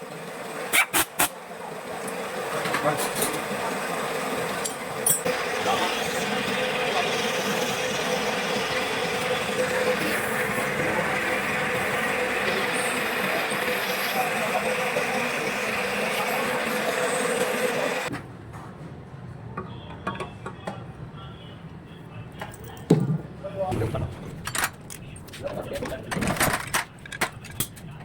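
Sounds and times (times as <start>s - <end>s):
machine humming: 1.5s - 18.1s.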